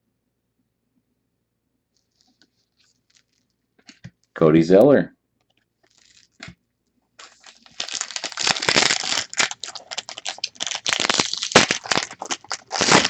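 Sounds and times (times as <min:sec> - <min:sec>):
card pack wrapper crinkling and tearing: 0:02.2 - 0:03.5, 0:05.8 - 0:06.6, 0:07.2 - 0:13.0.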